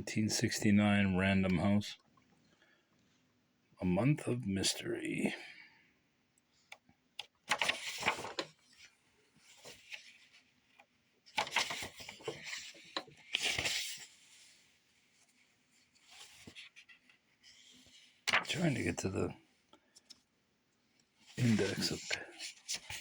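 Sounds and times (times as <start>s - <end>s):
book pages rustling: 6.6s - 19.0s, 19.7s - 23.0s.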